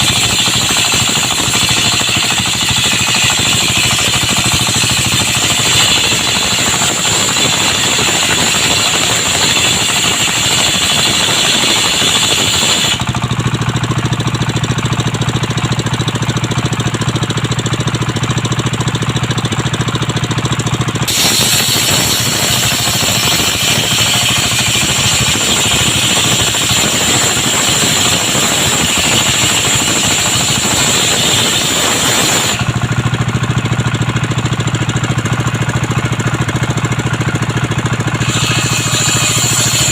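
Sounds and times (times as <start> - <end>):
high-pitched sawing of wood: 0.0 - 13.2, 21.0 - 32.9, 37.8 - 39.9
sawmill engine humming: 0.0 - 39.9.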